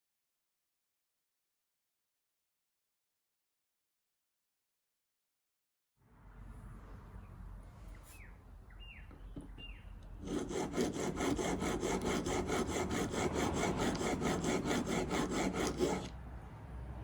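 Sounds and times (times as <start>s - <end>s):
bird chirps: 8.1s - 10.0s
chisel scraping on sharpening stone: 10.2s - 16.1s.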